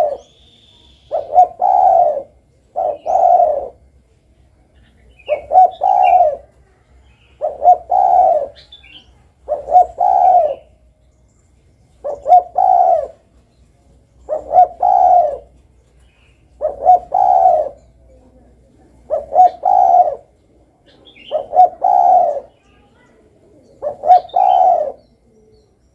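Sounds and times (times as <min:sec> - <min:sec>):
dove cooing: 0:00.0 - 0:00.4, 0:01.0 - 0:04.0, 0:05.0 - 0:10.8, 0:12.0 - 0:13.3, 0:14.2 - 0:25.8
faint high chirps: 0:00.0 - 0:18.8.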